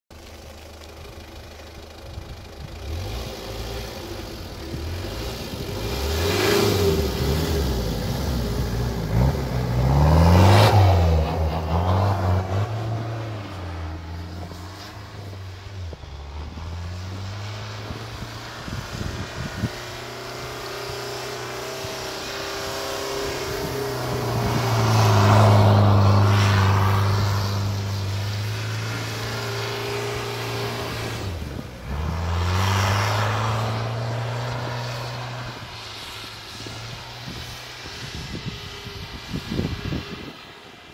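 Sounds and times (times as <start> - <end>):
car engine revving: 2.0 - 38.5.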